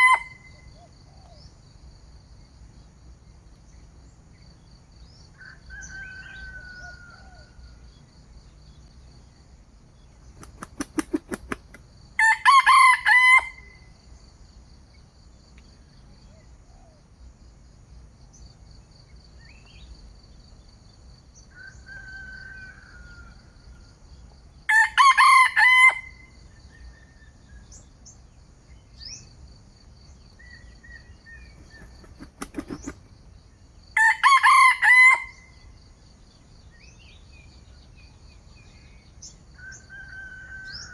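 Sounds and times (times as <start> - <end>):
rooster crowing: 0.0 - 0.5, 5.4 - 7.7, 12.2 - 13.9, 21.5 - 23.6, 24.7 - 26.4, 34.0 - 35.6, 39.6 - 40.9
wing flapping: 10.3 - 11.9, 31.5 - 33.1
faint bird chirps: 26.4 - 33.6
high insect trill: 27.7 - 36.8.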